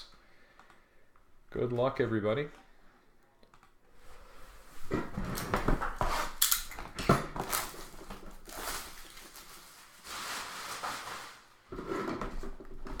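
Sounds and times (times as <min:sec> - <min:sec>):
wrapper rustling: 0:05.8 - 0:11.7
card pack wrappers crackling: 0:07.4 - 0:11.5.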